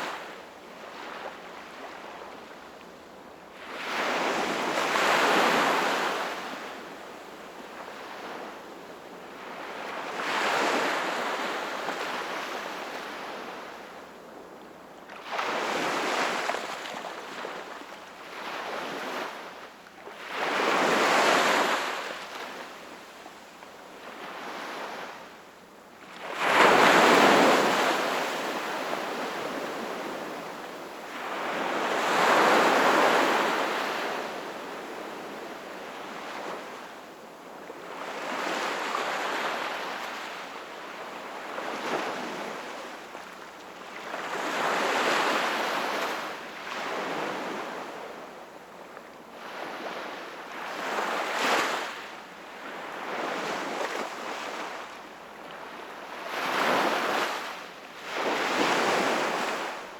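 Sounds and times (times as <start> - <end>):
sea waves breaking on shore: 15.2 - 23.1, 26.1 - 36.8, 49.4 - 59.9.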